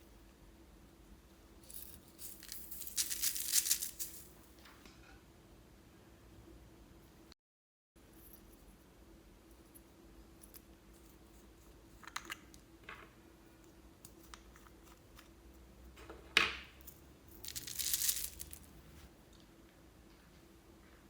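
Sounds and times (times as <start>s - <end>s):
crinkling or tearing: 2.4s - 4.3s, 17.5s - 18.7s.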